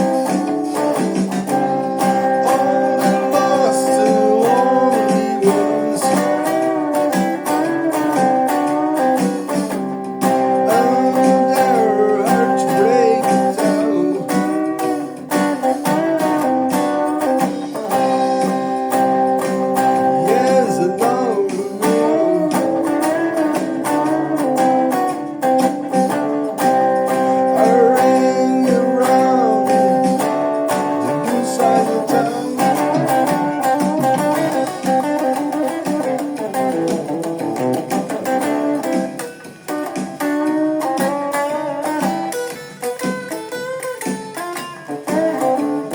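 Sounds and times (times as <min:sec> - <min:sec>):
honky-tonk guitar music: 0:00.0 - 0:45.9.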